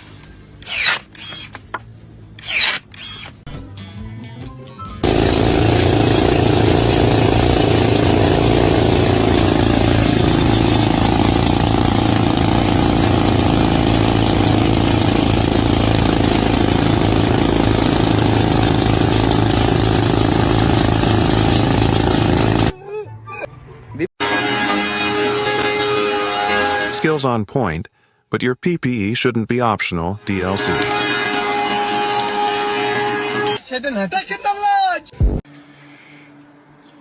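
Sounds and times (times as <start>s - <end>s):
engine running: 5.0s - 22.7s.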